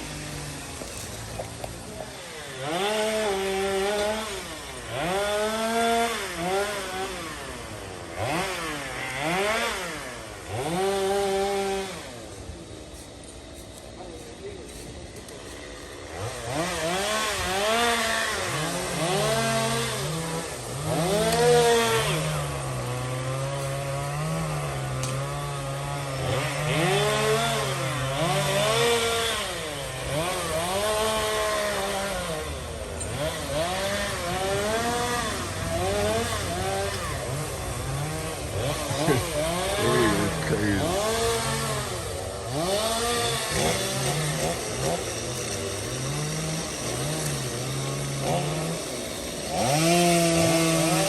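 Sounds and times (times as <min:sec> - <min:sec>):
chainsaw revving while cutting: 0:00.0 - 0:51.0
low steady engine note: 0:29.4 - 0:49.5.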